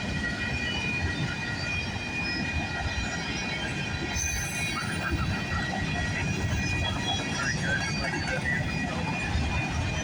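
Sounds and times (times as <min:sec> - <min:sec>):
train wheels rumbling on rails: 0:00.0 - 0:10.0
high-pitched wheel squeal: 0:03.6 - 0:05.5.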